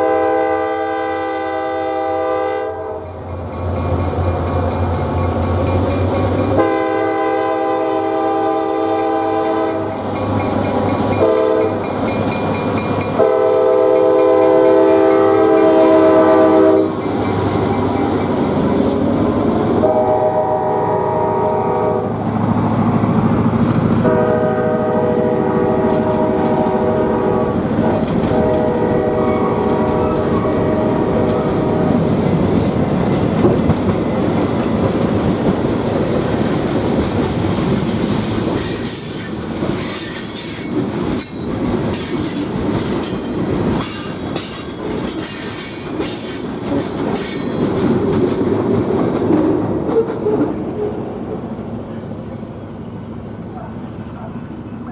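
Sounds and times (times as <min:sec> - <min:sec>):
locomotive air horn blasts: 0:00.0 - 0:03.1, 0:06.5 - 0:10.1, 0:11.2 - 0:11.8, 0:13.2 - 0:17.0, 0:19.8 - 0:22.2, 0:24.0 - 0:32.0
diesel locomotive engine: 0:00.0 - 0:54.9
wheels clacking on rails: 0:02.0 - 0:54.9.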